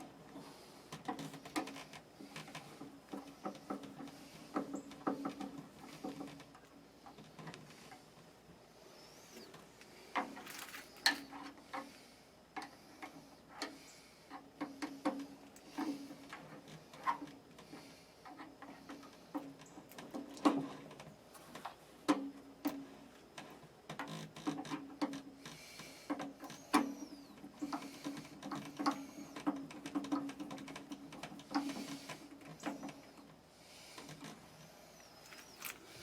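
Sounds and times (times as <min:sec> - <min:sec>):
hand tools clicking and scraping metal: 0:09.4 - 0:11.9, 0:34.0 - 0:36.0.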